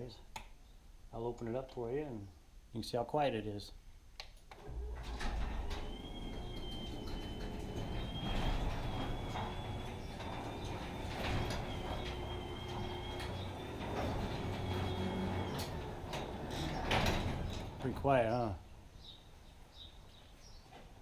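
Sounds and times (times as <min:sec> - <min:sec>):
garage door opener motor hum: 0:04.6 - 0:18.2.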